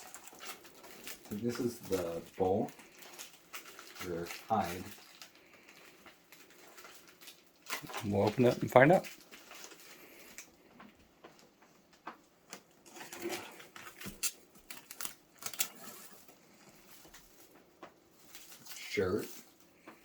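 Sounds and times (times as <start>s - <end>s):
wrapping crinkling: 0.0s - 20.0s.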